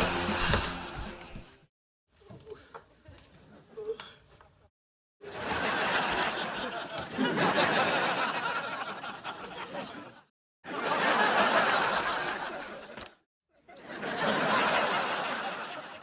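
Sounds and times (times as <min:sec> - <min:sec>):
studio audience laughter: 0:05.2 - 0:16.0.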